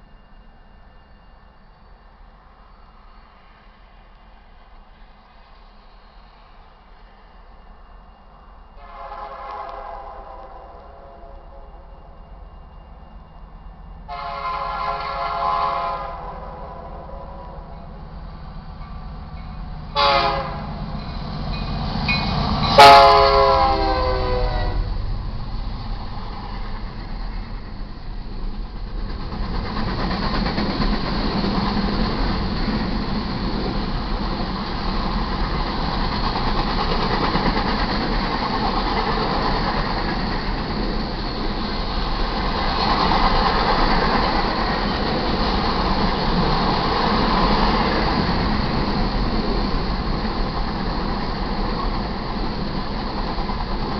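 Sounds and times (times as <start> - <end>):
train cars rumbling on rails: 0.0 - 53.9
train horn blasts: 8.8 - 12.2, 14.1 - 17.8, 19.9 - 25.0.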